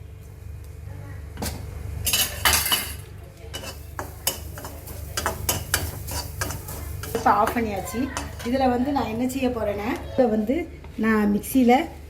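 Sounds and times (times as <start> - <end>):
metal spoon scraping a pan: 3.5 - 8.7
sharp taps on a pan: 3.9 - 8.4.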